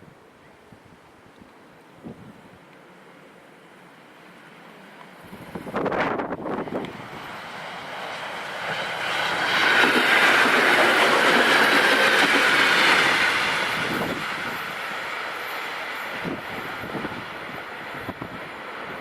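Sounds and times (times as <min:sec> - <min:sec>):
train wheels on rail: 0:04.0 - 0:19.0.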